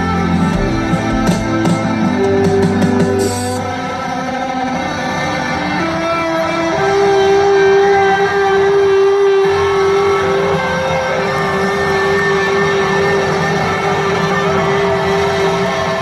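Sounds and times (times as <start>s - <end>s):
live band playing instrumental: 0.3s - 3.6s.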